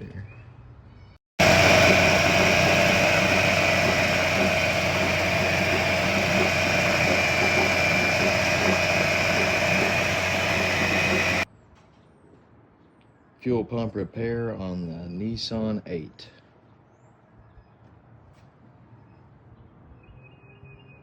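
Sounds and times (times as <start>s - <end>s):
outboard motor running: 1.4s - 11.5s
steady whine: 1.4s - 11.5s.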